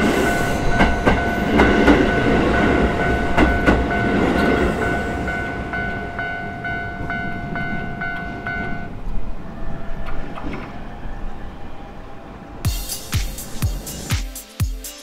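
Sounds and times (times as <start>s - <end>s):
level crossing bell clanging: 0.0s - 9.0s
train rumble: 0.0s - 14.1s.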